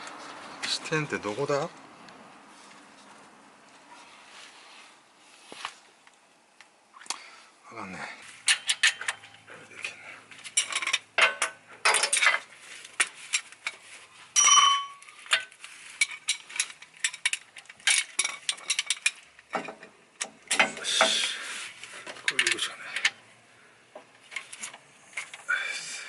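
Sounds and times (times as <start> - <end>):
metal tools clinking: 8.4 - 9.5, 10.4 - 19.9, 22.1 - 23.2
short ringing metal clink: 14.4 - 15.0.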